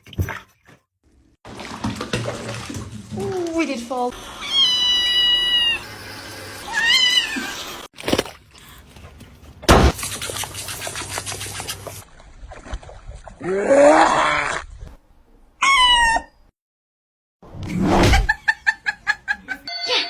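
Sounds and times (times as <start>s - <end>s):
cats meowing: 4.4s - 5.8s, 6.7s - 7.8s
heavy thump with clatter: 9.7s - 10.0s
sharp knock: 9.7s - 10.0s.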